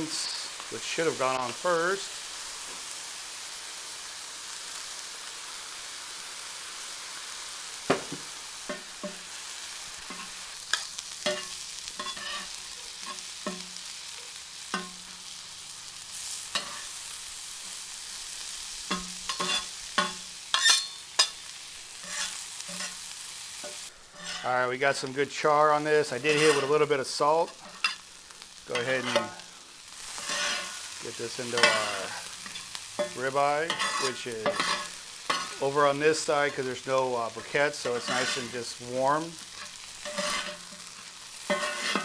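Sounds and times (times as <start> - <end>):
food sizzling on a griddle: 0.0 - 42.0
spatula clicking and scraping: 10.0 - 13.7, 18.9 - 21.4, 22.0 - 23.0, 30.0 - 35.7, 37.4 - 38.7, 39.4 - 42.0.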